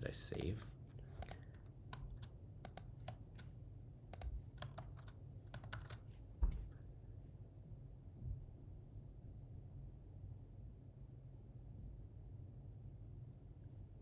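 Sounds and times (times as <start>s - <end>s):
keyboard typing: 0.3s - 3.5s, 4.1s - 6.1s.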